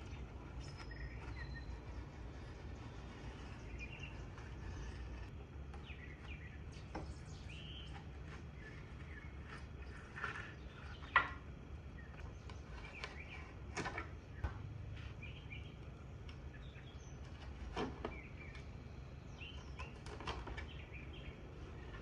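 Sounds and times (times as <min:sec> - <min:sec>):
faint bird chirps: 0:00.0 - 0:22.0
low steady hum: 0:00.0 - 0:22.0.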